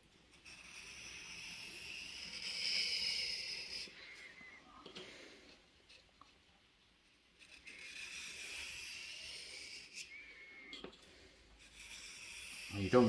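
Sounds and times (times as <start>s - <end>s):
knife scraping on sharpening stone: 0.4s - 3.9s, 7.5s - 10.1s, 11.6s - 13.0s.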